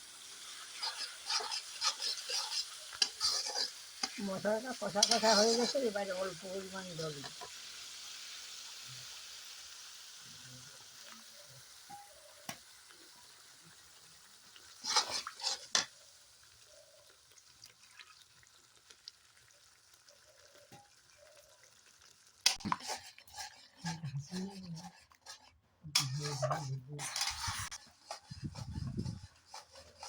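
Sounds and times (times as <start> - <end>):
paste sizzling in hot oil: 0.0 - 30.0
spatula scraping a pan: 0.2 - 7.8, 14.6 - 16.0, 22.4 - 30.0.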